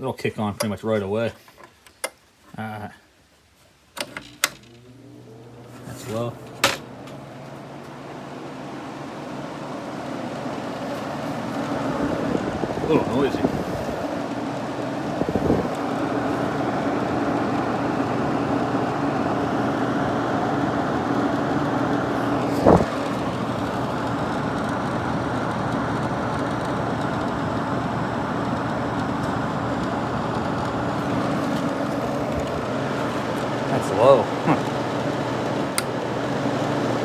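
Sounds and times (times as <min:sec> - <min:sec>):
window air conditioner whirring: 0:00.0 - 0:37.0.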